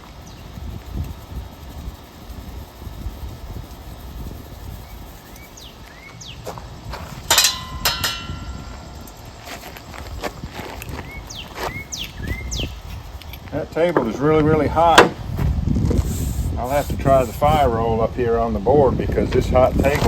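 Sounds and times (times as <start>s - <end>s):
wind rumbling on microphone: 0.0s - 20.0s
bird chirps: 4.8s - 6.5s, 10.9s - 13.0s
metal ringing tone: 7.3s - 9.2s
metallic clinks: 7.3s - 9.3s.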